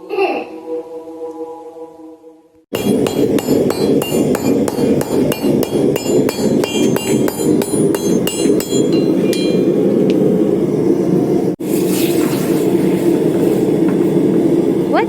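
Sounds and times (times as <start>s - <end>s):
hammer striking hot steel on anvil: 2.7s - 10.2s.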